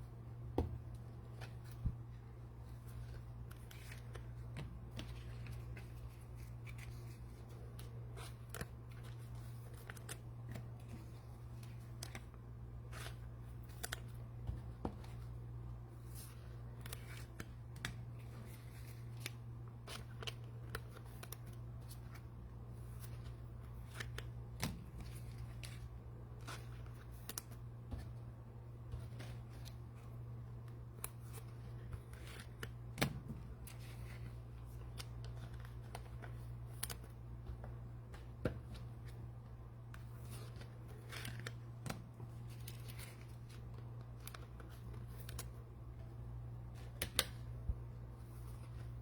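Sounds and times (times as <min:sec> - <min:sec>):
trading cards rustling and clicking: 0:00.6 - 0:49.0.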